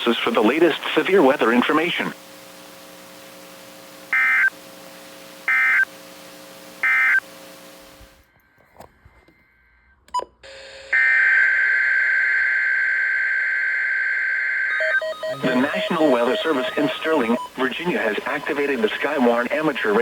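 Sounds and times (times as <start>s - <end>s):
low steady hum: 0.0s - 10.2s
loud steady high tone: 11.0s - 20.0s
warbling data burst tones: 11.0s - 20.0s.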